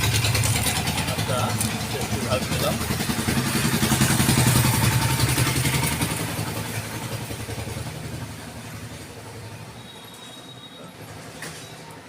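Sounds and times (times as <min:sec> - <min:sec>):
vehicle engine running: 0:00.0 - 0:09.6.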